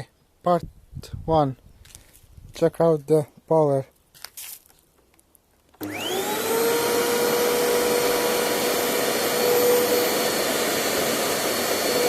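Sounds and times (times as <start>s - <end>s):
vacuum cleaner motor whining: 5.8s - 12.0s.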